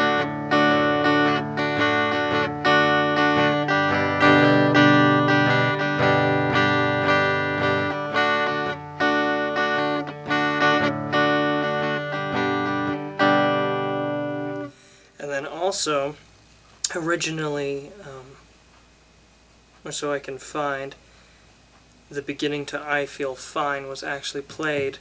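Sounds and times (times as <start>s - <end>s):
acoustic guitar strummed chords: 0.0s - 14.9s.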